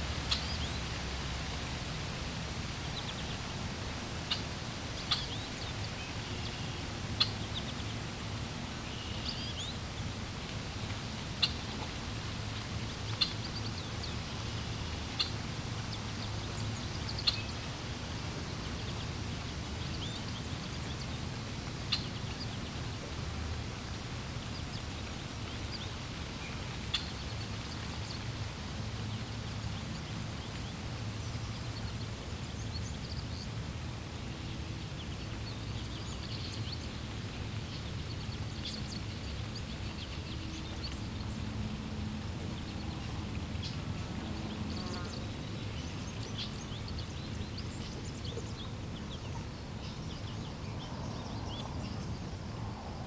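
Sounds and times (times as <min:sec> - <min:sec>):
flowing water rushing: 0:00.0 - 0:53.0.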